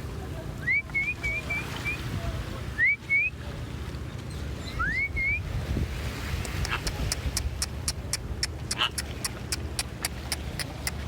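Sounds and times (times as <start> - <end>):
bird whistling song: 0.6 - 2.0, 2.8 - 3.4, 4.3 - 5.5.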